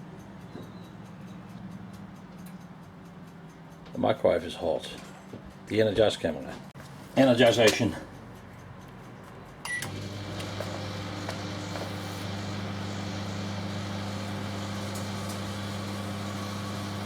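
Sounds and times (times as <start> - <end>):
microwave running with fan whir: 9.6 - 17.0
microwave beep: 9.7 - 17.0.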